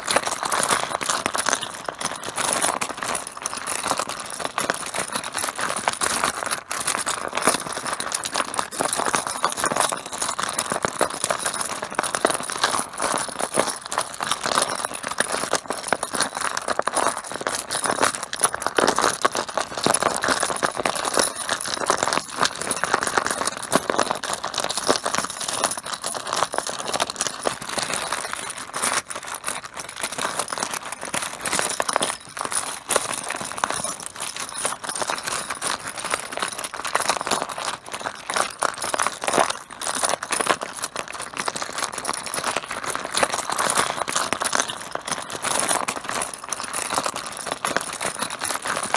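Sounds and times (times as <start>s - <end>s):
mahjong tiles clattering: 19.2s - 26.6s.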